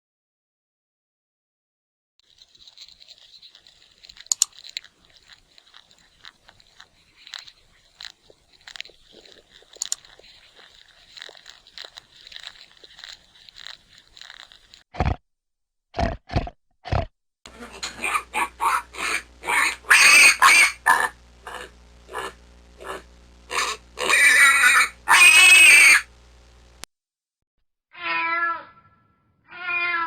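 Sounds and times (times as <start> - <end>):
crunching and chewing food: 2.2 - 15.2, 16.0 - 26.0.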